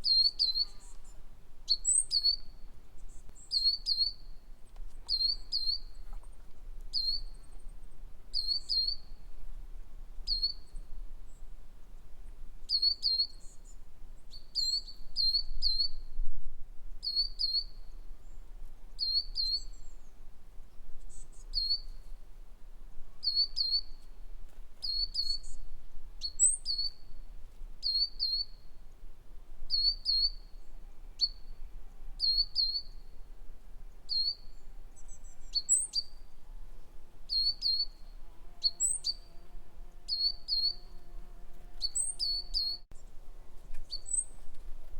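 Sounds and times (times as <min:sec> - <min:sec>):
songbird chirping: 0:37.3 - 0:44.6.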